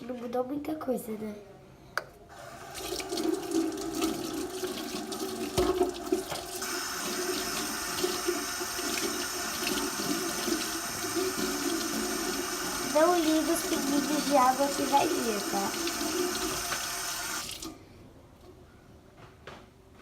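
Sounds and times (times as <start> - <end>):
water running from a tap: 2.5 - 17.8.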